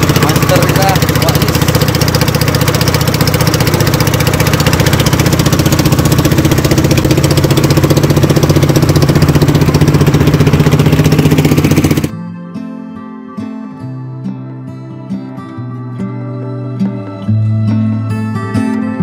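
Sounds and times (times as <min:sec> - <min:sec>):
small boat engine running: 0:00.0 - 0:12.3.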